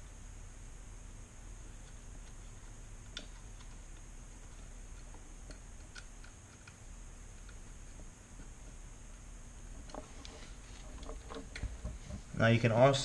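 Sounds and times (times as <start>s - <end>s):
low steady hum: 0.0s - 13.0s
small screws clicking: 1.8s - 8.8s.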